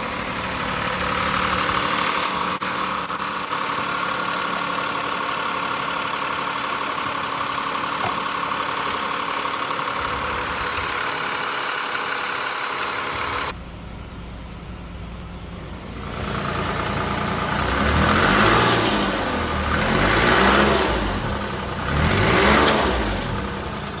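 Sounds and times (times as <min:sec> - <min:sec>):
car engine idling and revving: 0:00.0 - 0:24.0.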